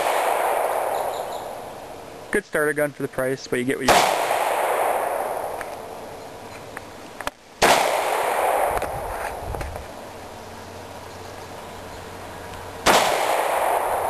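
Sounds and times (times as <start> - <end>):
gunshots echoing: 0.0 - 1.7, 3.8 - 6.0, 7.6 - 9.0, 12.8 - 14.0.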